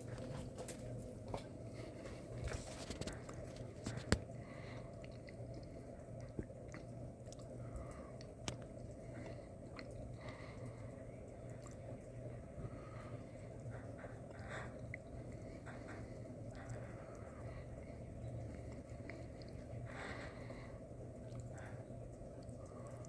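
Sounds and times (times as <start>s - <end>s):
ceiling fan motor hum: 0.0s - 23.0s.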